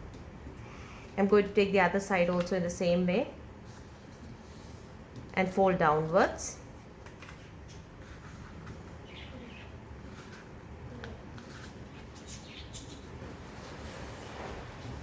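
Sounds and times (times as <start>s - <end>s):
faint bird chirps: 9.0s - 9.8s, 12.2s - 13.1s.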